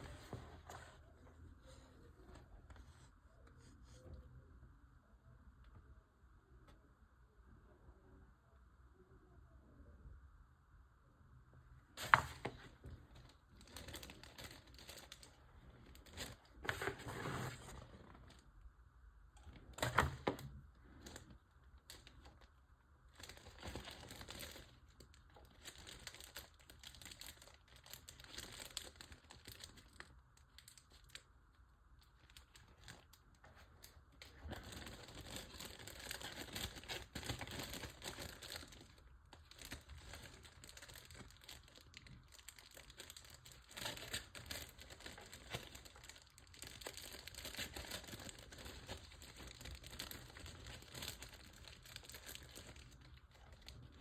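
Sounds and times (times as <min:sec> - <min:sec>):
packaging crinkling and rustling: 0:12.0 - 0:18.5, 0:19.4 - 0:31.3, 0:32.0 - 0:54.0.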